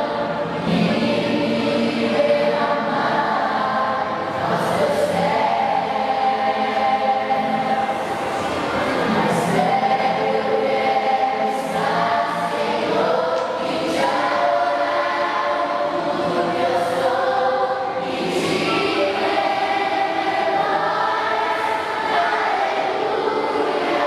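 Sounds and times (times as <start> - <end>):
choir singing long notes: 0.0 - 24.0.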